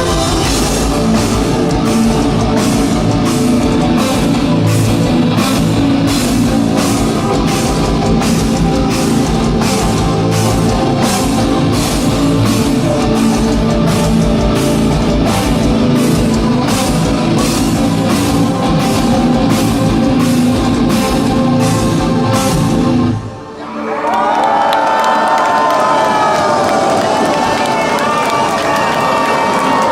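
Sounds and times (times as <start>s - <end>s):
heavy metal band playing: 0.0s - 23.6s.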